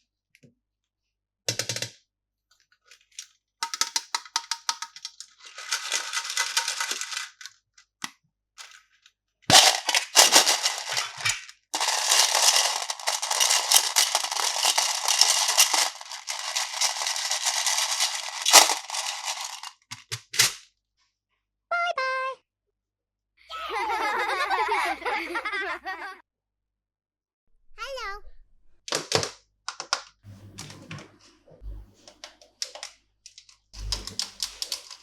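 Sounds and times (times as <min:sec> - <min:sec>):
plastic packaging crinkling: 0:05.0 - 0:07.5, 0:09.5 - 0:20.6, 0:32.6 - 0:35.0.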